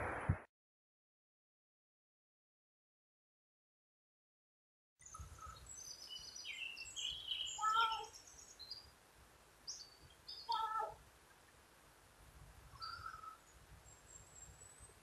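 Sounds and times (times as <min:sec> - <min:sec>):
songbirds chirping: 0:05.0 - 0:15.0
crow calling: 0:07.1 - 0:08.2, 0:12.8 - 0:13.4.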